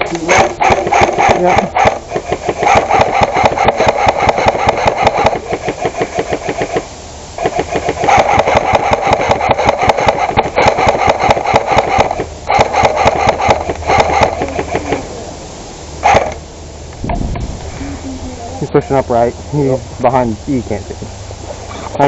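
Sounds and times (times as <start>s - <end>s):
airsoft rifle firing bursts: 0.3s - 15.0s, 16.0s - 16.3s.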